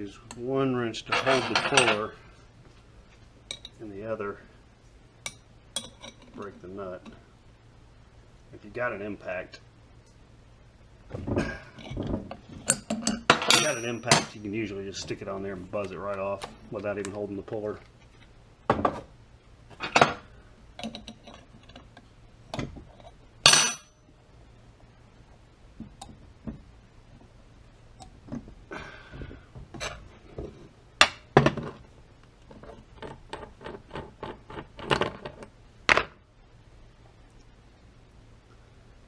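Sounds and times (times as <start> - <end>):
metal hand tools clinking: 12.7 - 14.4.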